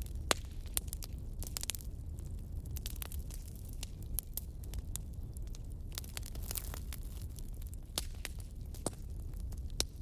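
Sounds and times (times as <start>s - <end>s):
low rumble of flames: 0.0s - 10.0s.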